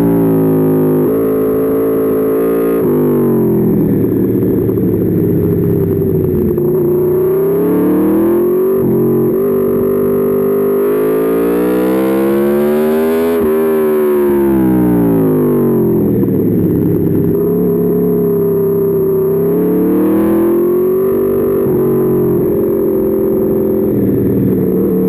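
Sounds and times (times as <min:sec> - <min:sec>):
motorcycle engine revving: 0:00.0 - 0:25.0.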